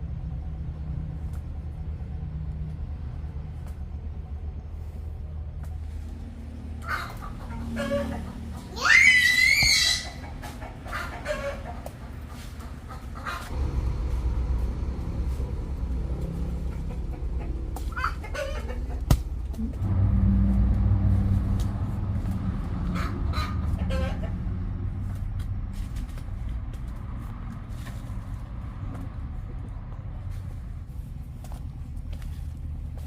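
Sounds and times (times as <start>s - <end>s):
low steady rumble: 0.0s - 8.9s, 10.0s - 33.0s
hen clucks: 6.6s - 8.8s, 9.7s - 13.6s, 16.0s - 19.9s, 22.4s - 24.8s.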